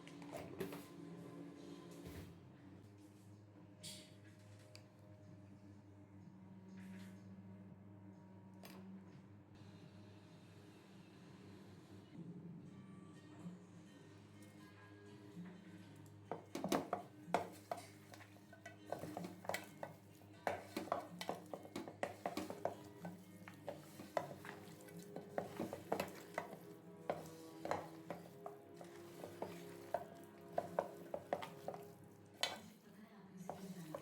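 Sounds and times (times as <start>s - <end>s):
background music: 12.3s - 32.6s.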